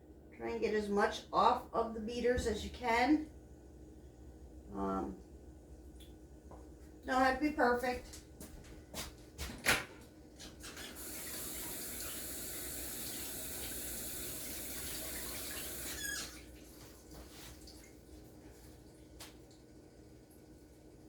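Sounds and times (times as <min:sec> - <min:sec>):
faucet running into sink: 0:10.6 - 0:16.6
faucet squeak: 0:15.0 - 0:16.4.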